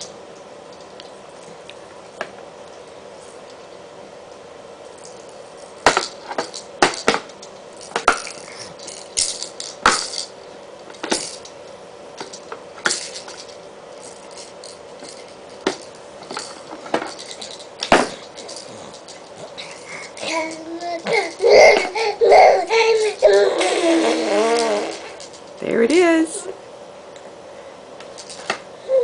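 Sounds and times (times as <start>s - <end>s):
baby rattle shaken: 5.0s - 11.6s, 12.2s - 23.9s, 24.6s - 25.6s, 28.2s - 28.5s.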